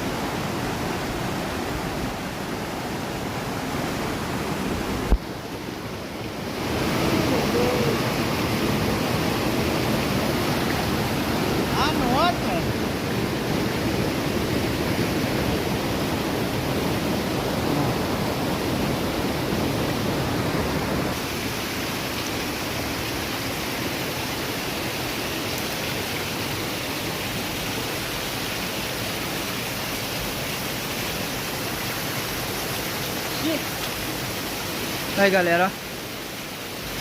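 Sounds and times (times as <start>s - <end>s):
waterfall rushing and splashing: 0.0s - 37.0s.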